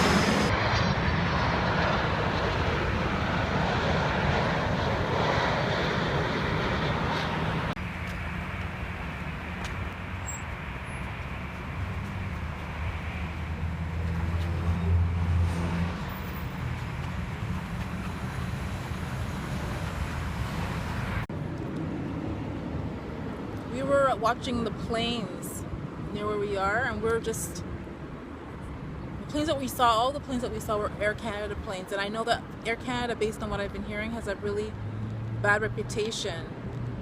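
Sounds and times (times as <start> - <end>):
airliner engine noise: 0.0 - 37.0.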